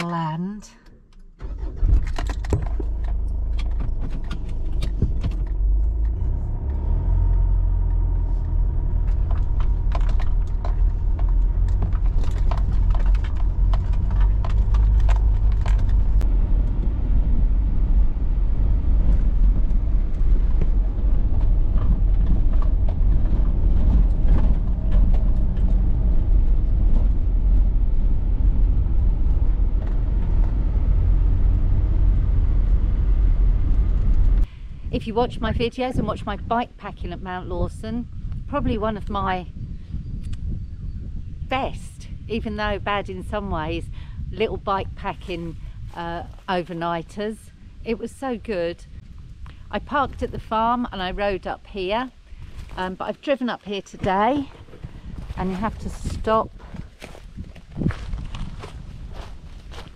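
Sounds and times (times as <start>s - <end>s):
car engine and tyres rumbling: 0.8s - 59.9s
car rattles and knocks: 1.4s - 6.8s, 8.0s - 16.9s, 19.0s - 30.8s.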